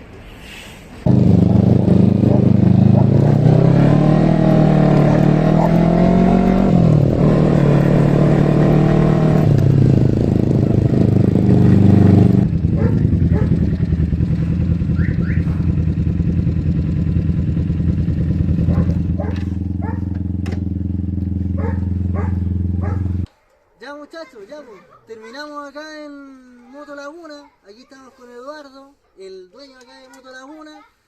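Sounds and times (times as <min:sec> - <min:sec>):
motorcycle engine running: 0:01.1 - 0:23.3.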